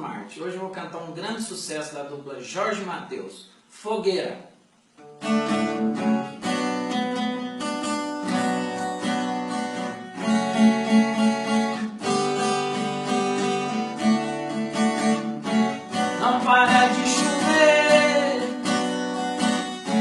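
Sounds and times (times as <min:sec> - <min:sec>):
acoustic guitar strumming chords: 0:05.0 - 0:20.0.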